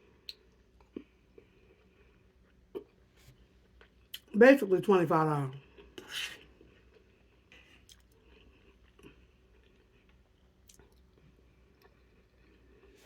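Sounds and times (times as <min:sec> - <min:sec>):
person chewing food: 0:00.0 - 0:04.3, 0:05.6 - 0:13.0
soft mouth clicks: 0:00.2 - 0:01.1.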